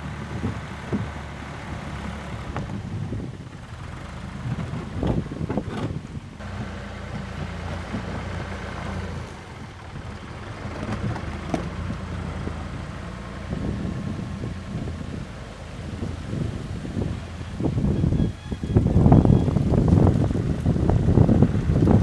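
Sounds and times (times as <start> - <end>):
backhoe engine running: 0.0 - 22.0.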